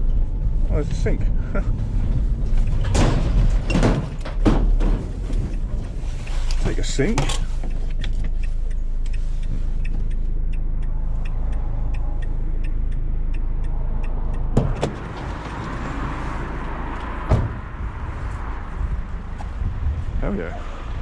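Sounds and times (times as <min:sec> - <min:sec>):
wind-like rush: 0:00.0 - 0:03.7, 0:13.6 - 0:21.0
vehicle engine idling: 0:00.0 - 0:20.0
indicator ticking: 0:07.9 - 0:14.9
car door clunking open: 0:14.6 - 0:15.8, 0:17.1 - 0:17.7.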